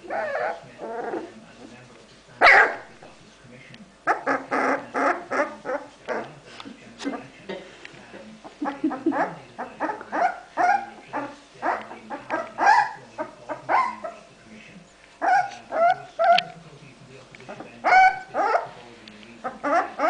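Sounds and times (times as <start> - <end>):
puppies yipping and whining: 0.0 - 1.3, 9.1 - 14.2, 15.2 - 16.6, 17.8 - 18.7, 19.4 - 20.0.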